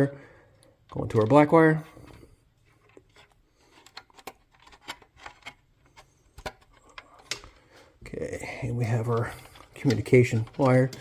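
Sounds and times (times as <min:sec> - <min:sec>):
plastic connector clicks and rubbing: 0:02.7 - 0:07.6, 0:08.7 - 0:11.0.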